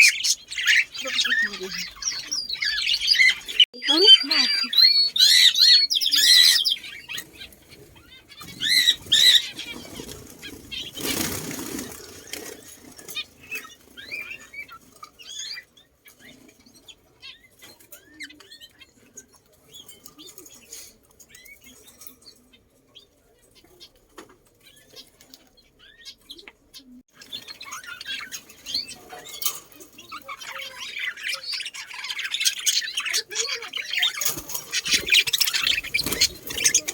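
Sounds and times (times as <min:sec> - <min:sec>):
birds squawking: 0:00.0 - 0:22.5, 0:24.6 - 0:36.9
faint bird chirps: 0:00.0 - 0:36.9
wings flapping: 0:08.4 - 0:14.9, 0:34.1 - 0:36.9.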